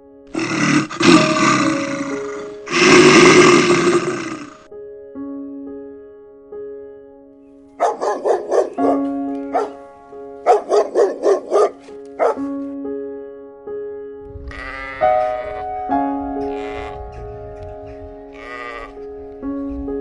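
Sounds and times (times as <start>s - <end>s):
background music sustained notes: 0.0s - 20.0s
long bleat-like call: 14.4s - 17.3s, 18.3s - 19.0s
sharp repeated animal calls: 14.4s - 19.2s.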